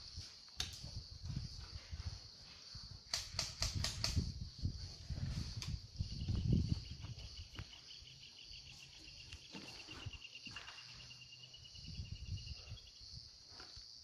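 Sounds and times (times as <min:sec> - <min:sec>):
high insect hum: 0:00.0 - 0:14.0
sharp clicks: 0:00.6 - 0:00.8, 0:03.1 - 0:04.3
insect trilling: 0:05.5 - 0:14.0.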